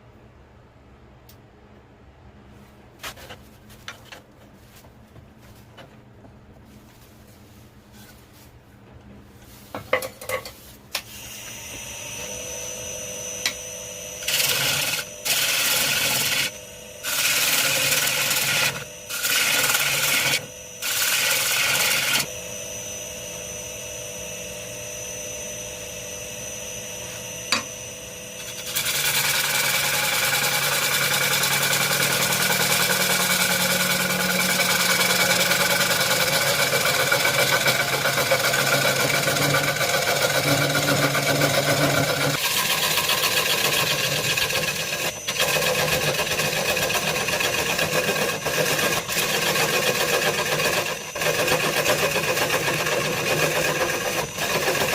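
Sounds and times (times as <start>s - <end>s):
power tool working wood: 11.1s - 54.9s.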